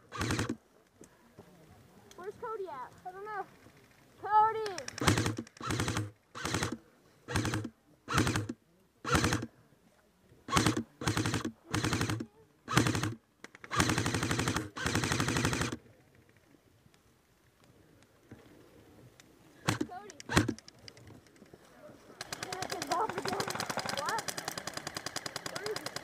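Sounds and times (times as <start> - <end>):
airsoft gun firing bursts: 0.0 - 0.6, 4.6 - 9.5, 10.5 - 15.8, 19.6 - 20.6, 22.2 - 26.0
gun motor whirring: 0.0 - 0.6, 4.8 - 9.5, 10.5 - 15.8, 19.6 - 20.7, 22.2 - 26.0.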